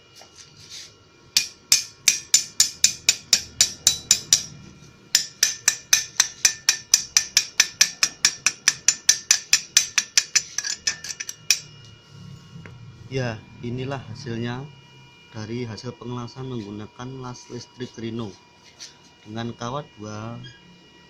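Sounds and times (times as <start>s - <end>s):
chipping hammer striking metal: 1.4s - 11.7s.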